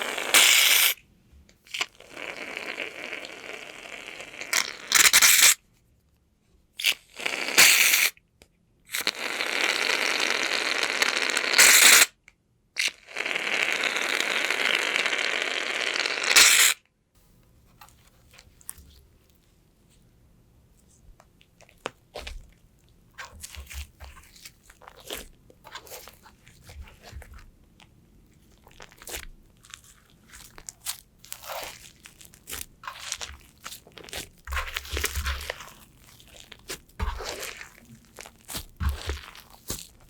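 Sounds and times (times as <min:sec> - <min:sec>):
slime squeezed by hand crackling: 0:00.0 - 0:01.0, 0:01.7 - 0:05.6, 0:06.8 - 0:08.2, 0:08.9 - 0:12.2, 0:12.8 - 0:16.8, 0:28.4 - 0:40.0.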